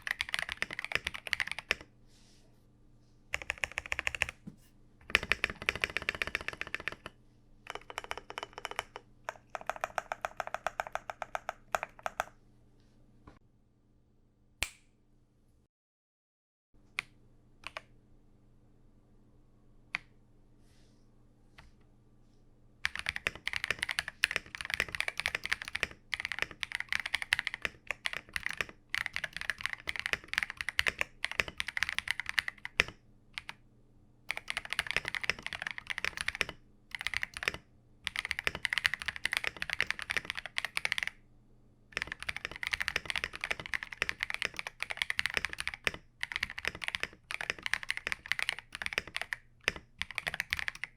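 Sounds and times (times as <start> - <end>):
mechanical keyboard typing: 0.0 - 1.8, 3.4 - 4.4, 5.0 - 12.3, 22.8 - 33.6, 34.3 - 41.2, 42.0 - 50.9.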